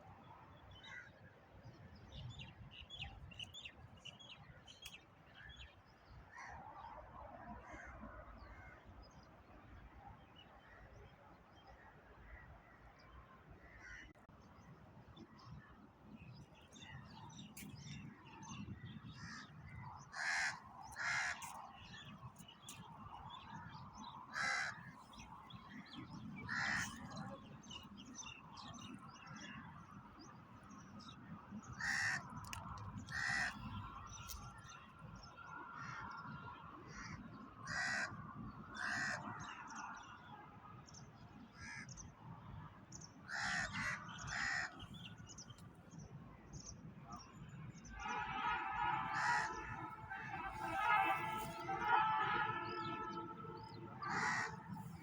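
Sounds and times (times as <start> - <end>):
crows cawing: 20.1 - 21.6, 24.3 - 25.0, 26.5 - 27.2, 31.8 - 32.3, 33.1 - 33.6, 36.9 - 38.1, 38.8 - 39.3, 43.3 - 44.8, 49.1 - 51.8, 52.5 - 54.7.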